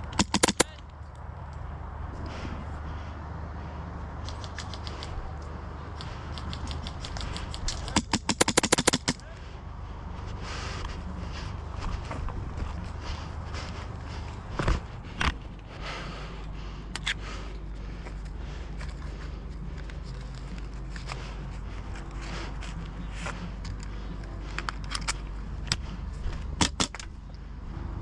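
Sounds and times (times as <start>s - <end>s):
sharp clicks: 0.0s - 1.0s, 6.0s - 9.2s, 26.6s - 27.1s
rustling movement: 2.1s - 26.6s.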